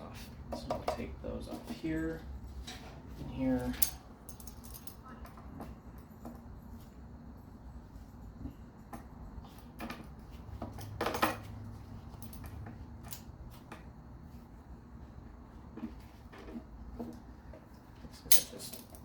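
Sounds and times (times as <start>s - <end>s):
metal tools and engine parts clinking: 0.9s - 5.3s, 10.7s - 13.3s, 18.2s - 19.0s.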